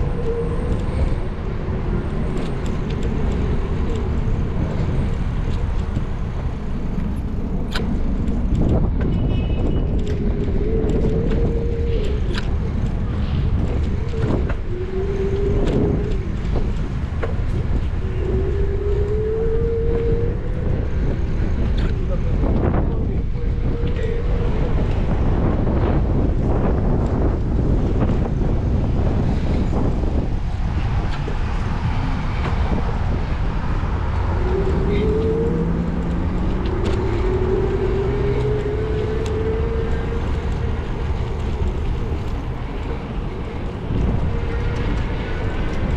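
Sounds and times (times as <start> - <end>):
car engine and road noise: 0.0 - 45.9
wind buffeting microphone: 0.0 - 45.9
wavering hum: 29.6 - 45.9.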